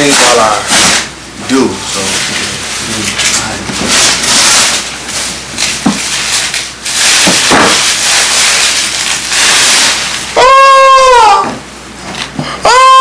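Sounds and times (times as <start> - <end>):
gift packaging rustling and crinkling: 0.2 - 10.4.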